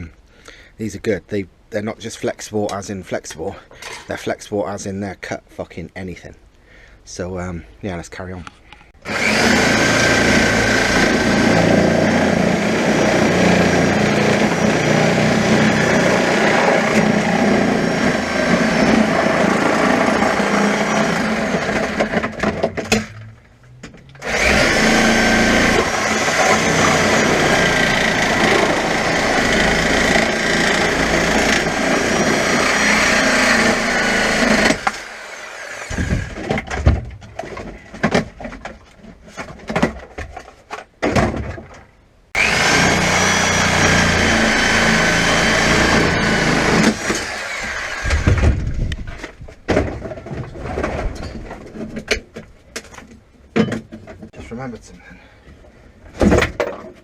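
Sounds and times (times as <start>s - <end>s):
reciprocating saw cutting: 9.0s - 22.2s, 24.2s - 36.4s, 42.4s - 48.6s.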